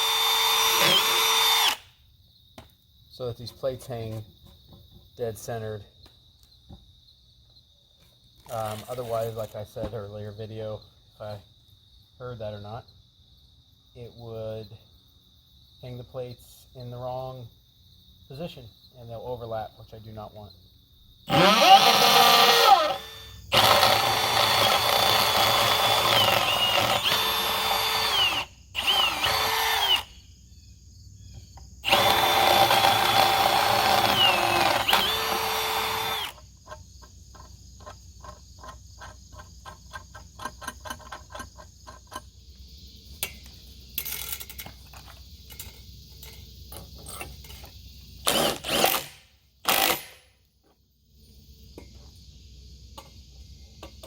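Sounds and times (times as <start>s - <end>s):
power drill boring holes: 0.0s - 1.9s, 21.3s - 30.1s, 31.8s - 36.4s, 48.2s - 50.2s.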